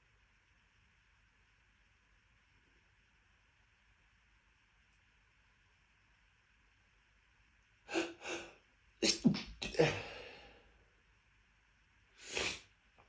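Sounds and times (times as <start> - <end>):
person catching breath: 7.9 - 8.5, 9.8 - 10.6, 12.2 - 12.6
person sneezing: 7.9 - 10.5, 12.2 - 12.6.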